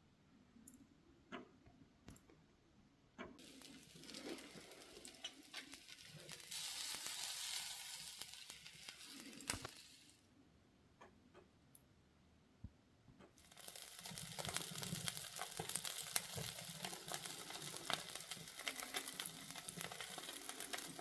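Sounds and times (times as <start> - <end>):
burning wood popping: 3.4 - 10.2, 13.4 - 21.0
meat sizzling hiss: 3.4 - 10.2, 13.4 - 21.0
wood fire crackling: 3.4 - 10.2, 13.4 - 21.0.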